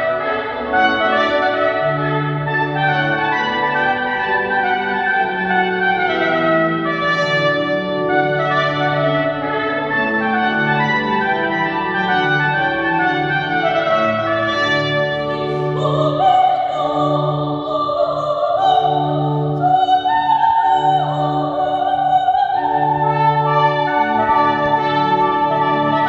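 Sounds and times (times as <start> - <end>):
trumpet notes: 0.0 - 26.0
soprano singing with vibrato: 15.2 - 26.0.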